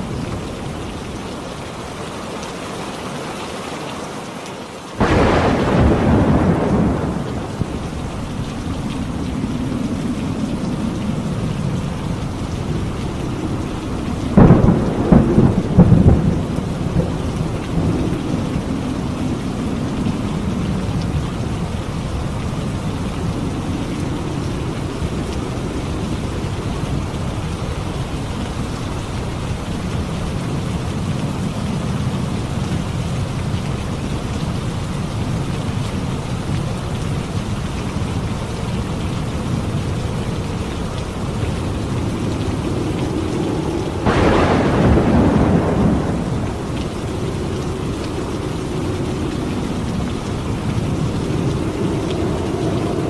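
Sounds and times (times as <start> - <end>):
heavy rain: 0.0 - 53.0
thunder clap: 5.0 - 21.0, 41.0 - 53.0
low rumble: 40.6 - 53.0.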